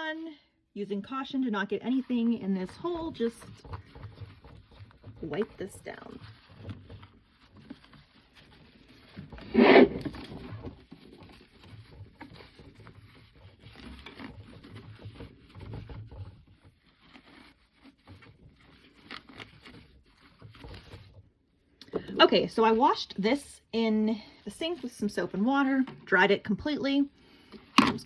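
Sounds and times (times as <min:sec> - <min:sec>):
hand rubbing plastic housing: 0:01.9 - 0:22.1.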